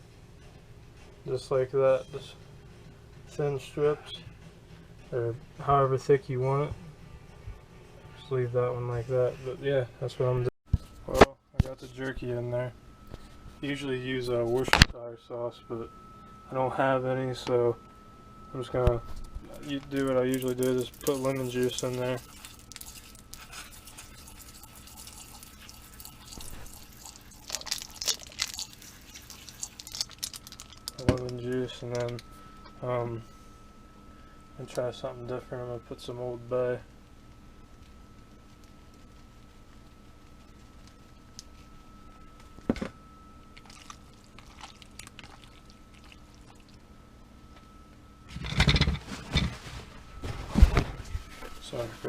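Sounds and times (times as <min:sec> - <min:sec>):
faint steady hum: 0:00.0 - 0:52.0
juice pouring and dripping: 0:19.6 - 0:32.2, 0:43.5 - 0:46.9.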